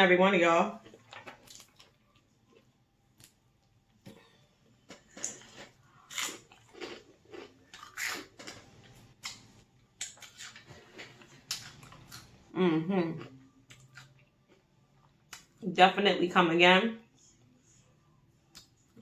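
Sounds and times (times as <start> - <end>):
person chewing: 0.8 - 12.5, 13.2 - 14.6.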